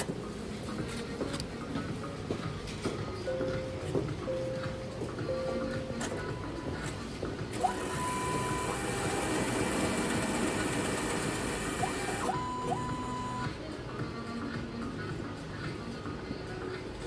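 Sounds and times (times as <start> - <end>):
tile cutter motor whirring: 7.6 - 12.4.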